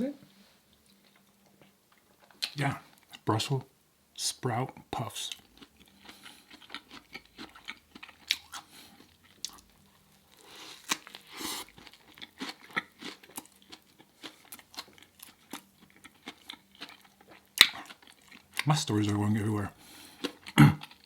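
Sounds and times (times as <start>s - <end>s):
person crunching chips: 5.3s - 18.6s.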